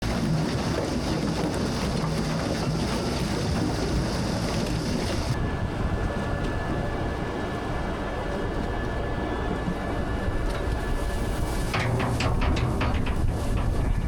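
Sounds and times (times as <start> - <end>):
farm machinery engine rumbling: 0.0 - 6.0, 10.3 - 14.0
wind noise: 0.0 - 14.0.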